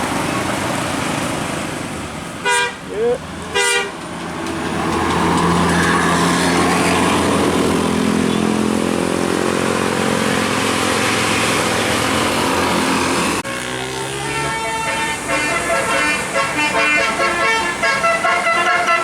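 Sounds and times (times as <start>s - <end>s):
bus engine running: 0.0s - 19.0s
road noise rush: 0.0s - 19.0s.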